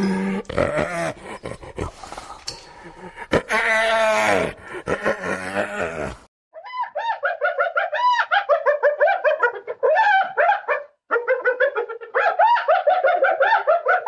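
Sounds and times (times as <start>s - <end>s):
hyena giggling: 0.6s - 2.0s, 2.8s - 6.2s.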